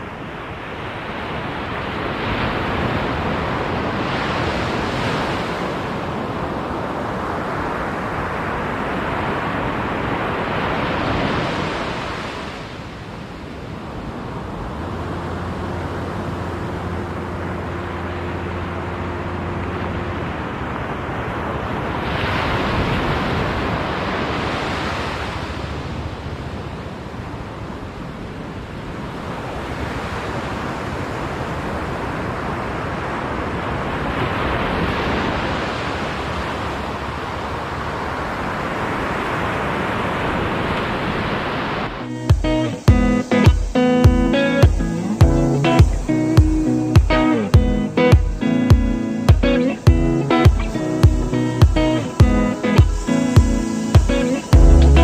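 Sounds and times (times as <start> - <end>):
waves breaking on beach: 0.0 - 55.0
steady low hum: 42.4 - 55.0.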